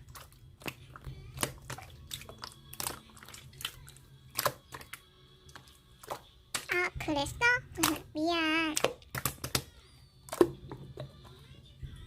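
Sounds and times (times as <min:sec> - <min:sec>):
slime squishing clicks and pops: 0:08.7 - 0:09.7.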